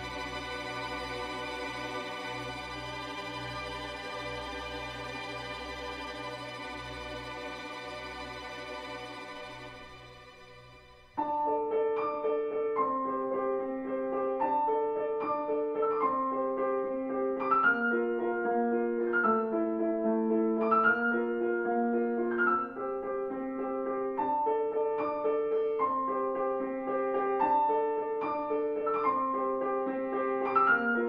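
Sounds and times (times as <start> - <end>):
sustained tone: 0.0 - 11.1
solo piano music: 0.0 - 31.0.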